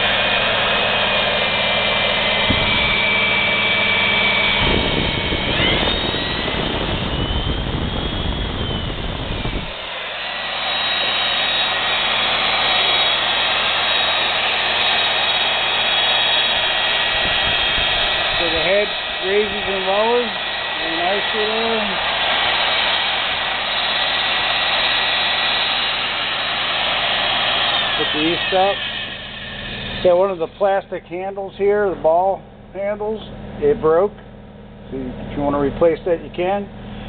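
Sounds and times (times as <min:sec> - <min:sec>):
drill press motor whining: 0:00.0 - 0:30.9
rough heavy grinding noise: 0:08.7 - 0:30.6.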